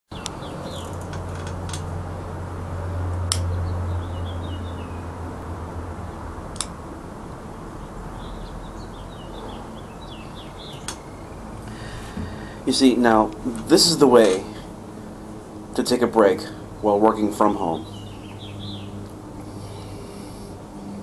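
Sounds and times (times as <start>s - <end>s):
small birds chirping: 0.1s - 1.0s, 3.4s - 5.1s, 7.8s - 14.8s, 15.8s - 20.6s
steady low hum: 0.2s - 21.0s
sharp clicks: 3.2s - 3.5s, 6.6s - 6.8s.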